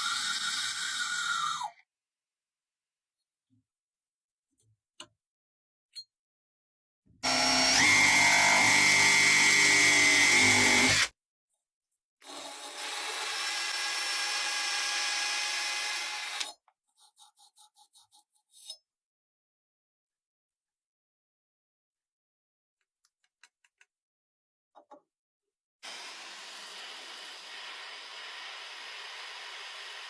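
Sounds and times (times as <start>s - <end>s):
power tool whining: 7.2s - 11.1s.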